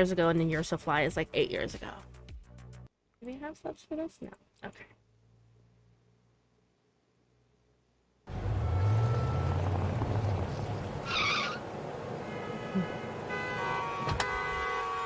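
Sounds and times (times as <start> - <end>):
vehicle engine running: 8.3 - 12.9
car horns honking: 8.3 - 15.0.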